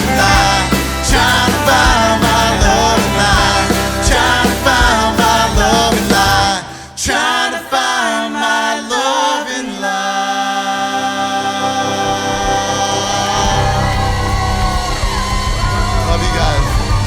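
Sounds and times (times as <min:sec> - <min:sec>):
live country band music: 0:00.0 - 0:06.9
people singing: 0:00.0 - 0:17.0.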